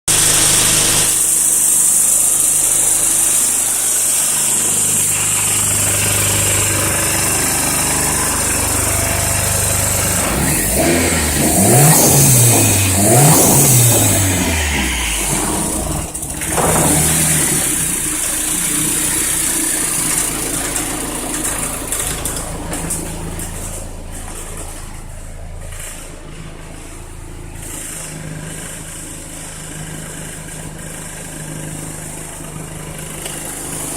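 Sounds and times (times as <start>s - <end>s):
car engine idling and revving: 0.1s - 33.9s.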